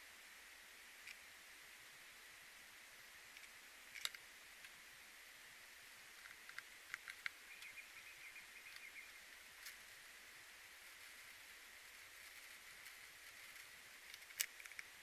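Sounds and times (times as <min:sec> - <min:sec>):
steady high hiss: 0:00.0 - 0:15.0
faint chirps and clicks: 0:01.0 - 0:01.3, 0:06.1 - 0:10.0, 0:10.8 - 0:15.0.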